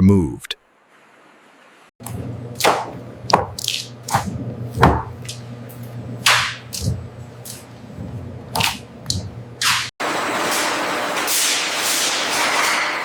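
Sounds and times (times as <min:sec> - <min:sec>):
water splashing and swishing: 0:02.0 - 0:09.9
low machine hum: 0:02.0 - 0:10.3.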